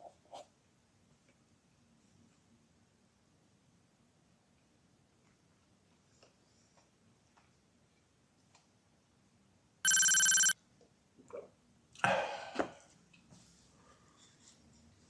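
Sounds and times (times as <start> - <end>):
electronic ringing tone: 9.9 - 10.6.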